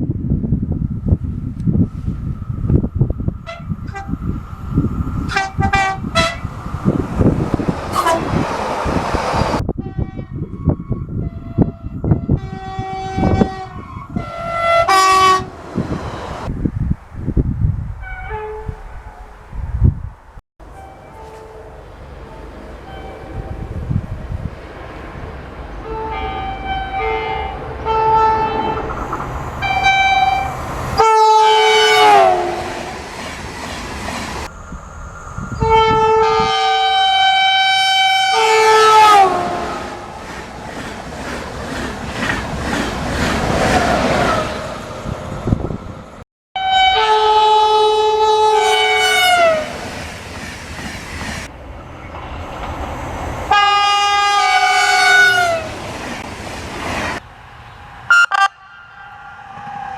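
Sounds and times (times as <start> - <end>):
train wheel and rail noise: 0.0 - 59.9
train horns: 3.4 - 4.4, 5.2 - 6.5, 7.6 - 8.8, 9.5 - 15.9, 18.0 - 19.4, 20.6 - 24.0, 25.7 - 33.1, 35.5 - 40.4, 46.6 - 49.9, 53.5 - 55.8, 58.1 - 59.9.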